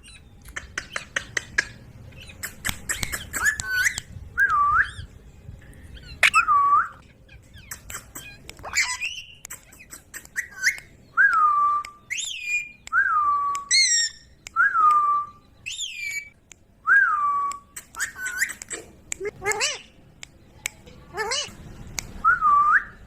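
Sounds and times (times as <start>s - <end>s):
sharp clicks: 0.4s - 4.6s, 7.6s - 13.7s, 17.5s - 19.6s
parrot whistling: 6.0s - 7.0s.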